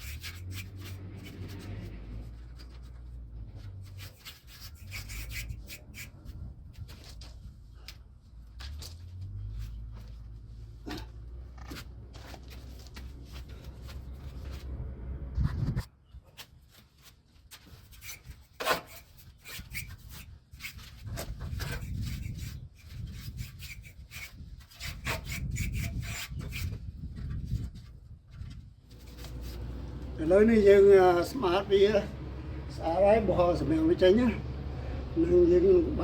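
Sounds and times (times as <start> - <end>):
brush scraping metal fins: 0.0 - 7.2, 16.4 - 27.9, 28.9 - 30.0.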